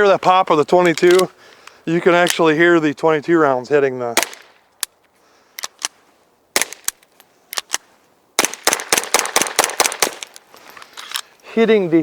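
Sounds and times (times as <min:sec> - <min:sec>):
suppressed pistol shots: 0:04.2 - 0:04.6, 0:08.4 - 0:10.3.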